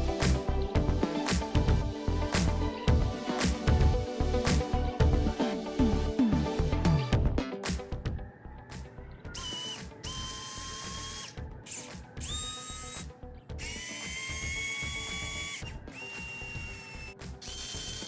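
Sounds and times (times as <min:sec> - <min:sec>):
small electric motor whining: 0:09.4 - 0:18.0.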